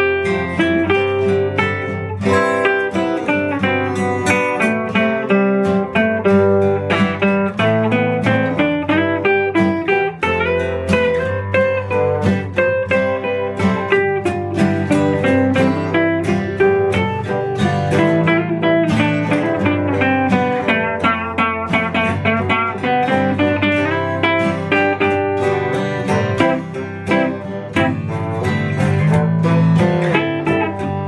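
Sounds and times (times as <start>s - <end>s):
guitar notes picked quickly: 0.0s - 31.0s
low accompaniment: 2.0s - 5.1s.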